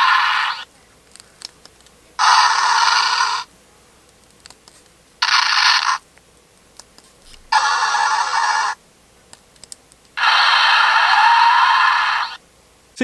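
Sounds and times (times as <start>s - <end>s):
toy electronic sound effects: 2.2s - 3.5s, 5.2s - 6.0s, 7.5s - 8.8s, 10.2s - 12.4s.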